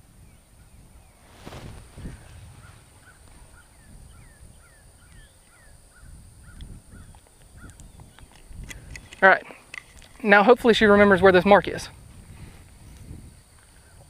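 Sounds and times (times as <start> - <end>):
birds calling: 0.3 - 10.2
low uneven rumble: 1.1 - 4.4.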